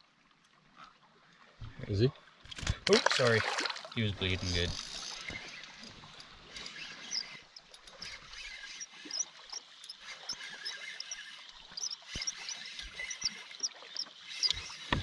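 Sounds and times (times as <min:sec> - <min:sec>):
small animal chirping: 0:06.7 - 0:07.4, 0:08.6 - 0:13.8.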